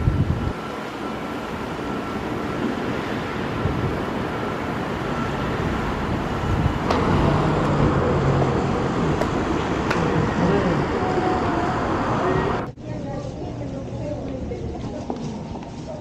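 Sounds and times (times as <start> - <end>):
road vehicle running: 0.0 - 12.8.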